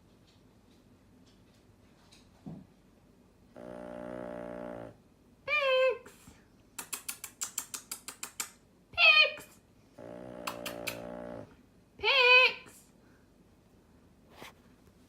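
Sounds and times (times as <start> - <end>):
dog snoring: 3.5 - 5.0, 10.0 - 11.6
sharp clicks: 6.8 - 8.6, 10.4 - 11.2.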